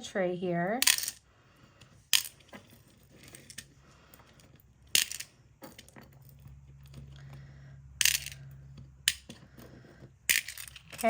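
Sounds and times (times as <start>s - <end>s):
beads clattering into tray: 0.8s - 1.2s, 2.0s - 7.4s, 8.0s - 11.0s.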